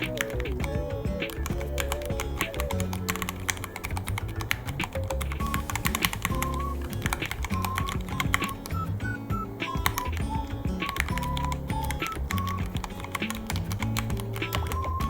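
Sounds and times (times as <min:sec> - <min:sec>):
background music: 0:00.0 - 0:15.0
mechanical keyboard typing: 0:01.2 - 0:08.8, 0:10.8 - 0:15.0.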